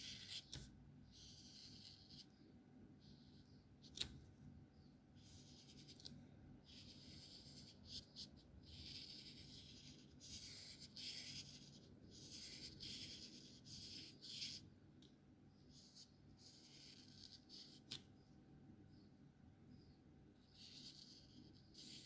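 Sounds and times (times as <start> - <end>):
felt-tip markers scratching on paper: 0.0 - 2.4, 5.2 - 14.7, 15.6 - 18.0, 20.4 - 22.0.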